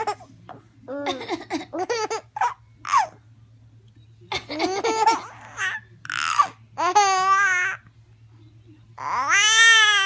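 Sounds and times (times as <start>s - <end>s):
baby laughing: 0.9s - 3.2s, 4.5s - 7.8s.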